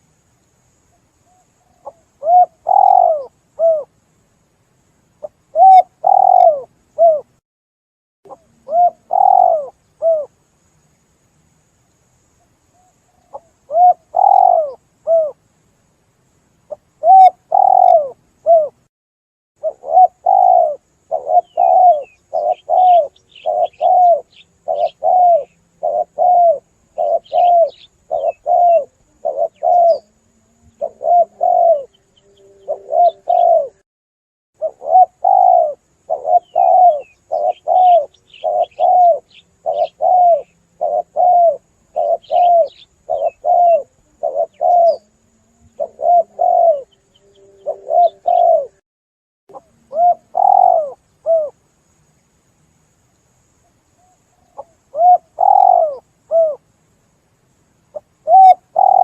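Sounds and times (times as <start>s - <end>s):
small birds chirping: 0.9s - 3.9s, 5.2s - 7.4s, 8.3s - 10.3s, 11.8s - 15.4s, 16.6s - 18.8s, 19.6s - 33.8s, 34.6s - 48.8s, 49.5s - 52.3s, 53.0s - 57.1s, 57.9s - 59.0s
dove cooing: 1.3s - 3.9s, 5.2s - 7.4s, 8.3s - 10.3s, 12.8s - 15.4s, 16.7s - 18.8s, 19.6s - 33.8s, 34.6s - 48.8s, 49.5s - 51.6s, 54.0s - 56.6s, 57.9s - 59.0s.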